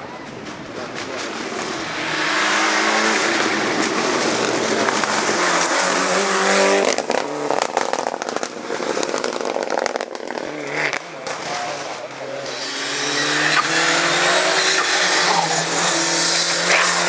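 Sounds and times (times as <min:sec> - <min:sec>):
exhaust pops and crackles: 0:00.0 - 0:17.0
rally car engine at full throttle: 0:00.0 - 0:17.0.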